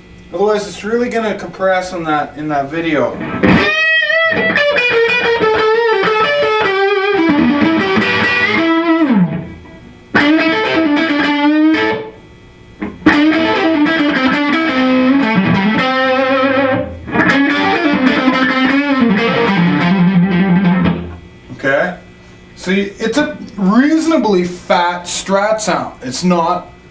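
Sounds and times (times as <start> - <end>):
electric guitar lead with bends: 3.2 - 12.2, 12.8 - 21.3.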